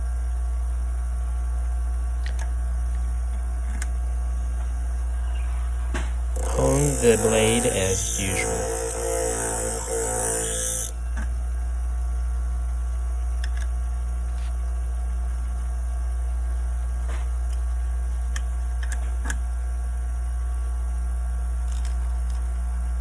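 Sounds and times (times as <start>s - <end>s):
sharpening machine humming: 5.6s - 11.2s.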